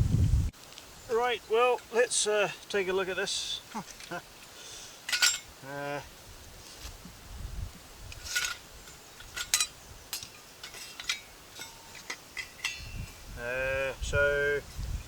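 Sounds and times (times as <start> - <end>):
metal stove parts clinking: 5.1 - 5.5, 8.1 - 13.1.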